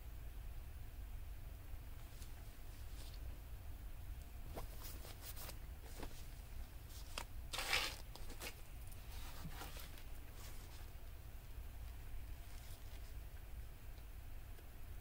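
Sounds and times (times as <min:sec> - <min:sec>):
low steady hum: 0:00.0 - 0:15.0
paper pages rustling: 0:04.5 - 0:11.0.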